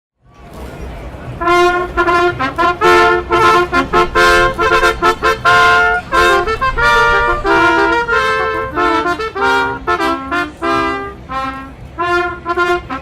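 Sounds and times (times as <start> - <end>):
solo trumpet fanfare: 1.4 - 13.0
low rumble: 1.5 - 10.1.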